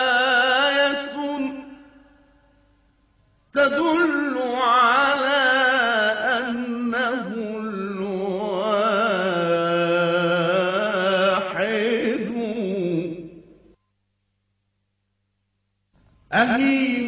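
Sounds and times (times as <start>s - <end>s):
solo voice chanting: 0.0s - 2.6s, 3.5s - 13.7s, 16.3s - 17.0s.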